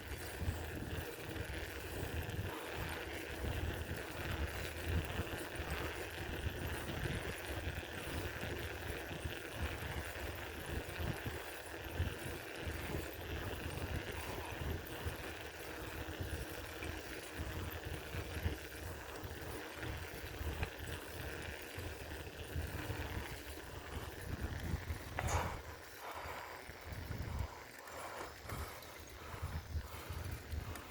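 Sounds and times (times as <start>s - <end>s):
bicycle rattle and road noise: 0.0s - 30.9s
wind gusting on microphone: 22.6s - 25.8s.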